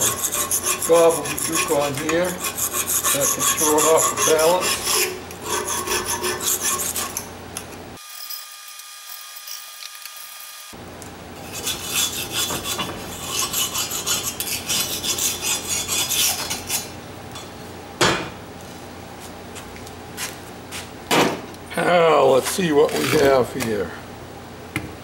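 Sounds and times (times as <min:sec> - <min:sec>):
scraping on steel mower blade: 0:00.0 - 0:07.3, 0:11.4 - 0:16.9, 0:22.3 - 0:23.4.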